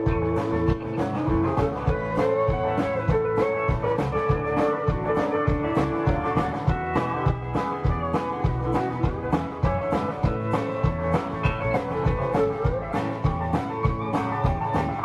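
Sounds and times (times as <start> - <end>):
country-rock band playing: 0.0 - 15.0
drum kit beat: 0.0 - 15.0
sustained lead guitar line: 0.0 - 15.0.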